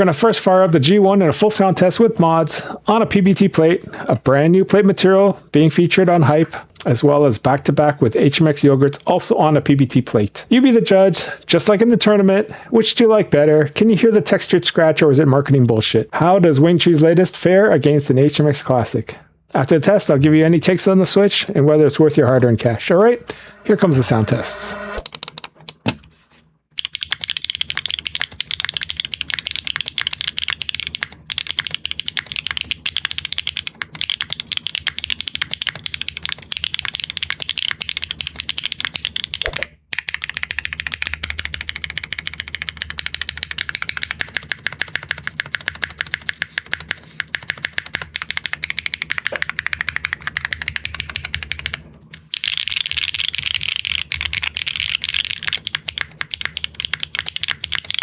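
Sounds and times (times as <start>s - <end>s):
fast typing on mechanical keyboard: 25.0s - 25.6s, 26.8s - 58.0s.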